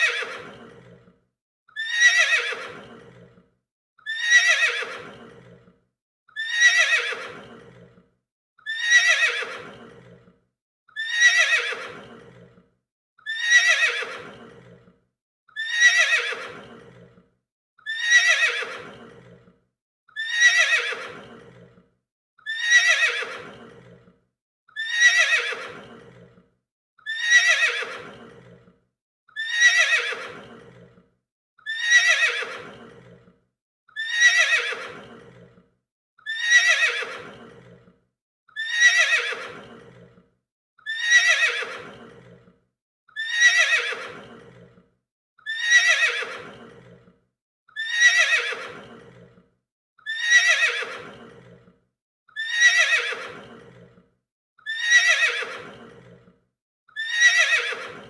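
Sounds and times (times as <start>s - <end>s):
horse neighing: 0.0s - 1.1s, 1.8s - 3.3s, 4.1s - 5.7s, 6.4s - 7.9s, 8.7s - 10.3s, 11.0s - 12.5s, 13.3s - 14.8s, 15.6s - 17.1s, 17.9s - 19.5s, 20.2s - 21.7s, 22.5s - 24.0s, 24.8s - 26.3s, 27.1s - 28.6s, 29.4s - 30.9s, 31.7s - 33.2s, 34.0s - 35.5s, 36.3s - 37.8s, 38.6s - 40.0s, 40.9s - 42.4s, 43.2s - 44.6s, 47.8s - 49.2s, 50.2s - 51.6s, 52.4s - 53.8s, 54.7s - 56.2s, 57.0s - 58.0s.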